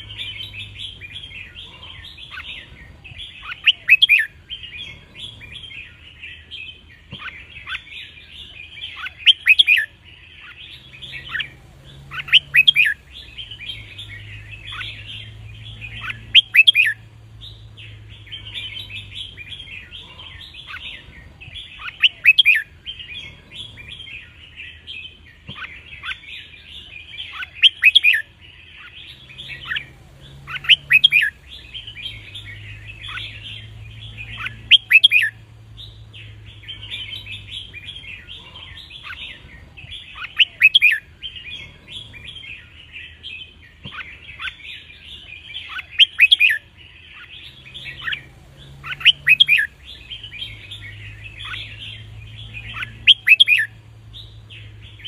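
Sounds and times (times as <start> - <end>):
continuous bird twittering: 0.0 - 55.0.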